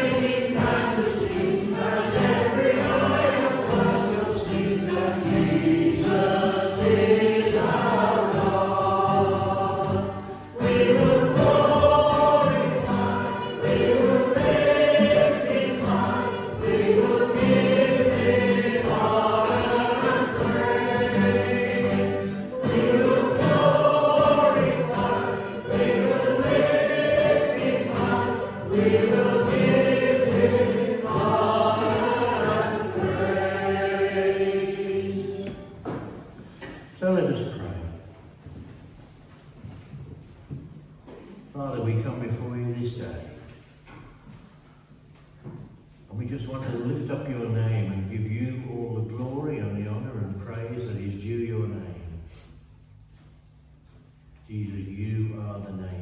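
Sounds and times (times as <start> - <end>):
instrumental accompaniment: 0.0 - 35.9
congregation singing a hymn: 0.0 - 38.0.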